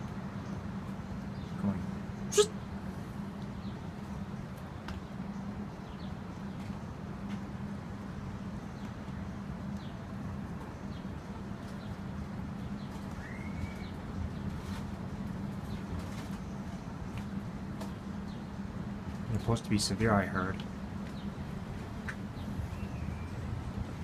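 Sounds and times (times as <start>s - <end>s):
low outdoor hum: 0.0s - 24.0s
rising bird call: 2.3s - 2.6s, 13.1s - 14.0s
faint bird chirps: 13.1s - 14.0s.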